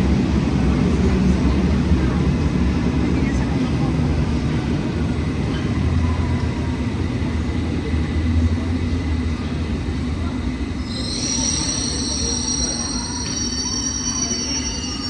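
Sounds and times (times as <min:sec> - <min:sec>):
train rumbling: 0:00.0 - 0:15.0
high-pitched wheel squeal: 0:10.8 - 0:15.0.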